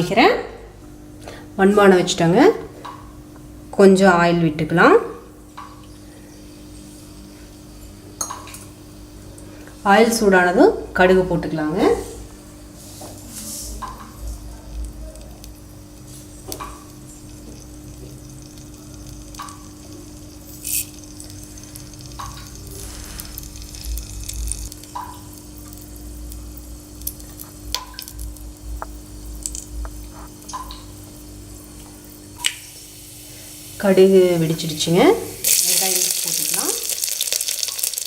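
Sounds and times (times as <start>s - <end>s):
faint steady hum: 0.0s - 38.0s
mustard seeds popping in hot oil: 8.2s - 8.8s, 13.7s - 38.0s.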